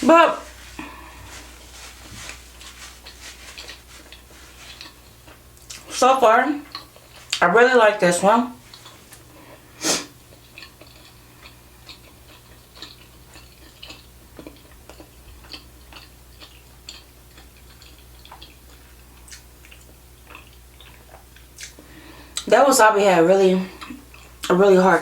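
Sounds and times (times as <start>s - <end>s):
steady low hum: 0.0s - 25.0s
wet mouth chewing clicks: 19.2s - 21.8s.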